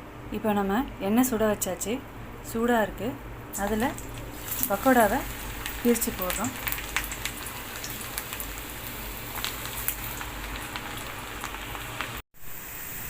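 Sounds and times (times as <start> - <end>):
dough sizzling in hot oil: 3.6 - 13.0.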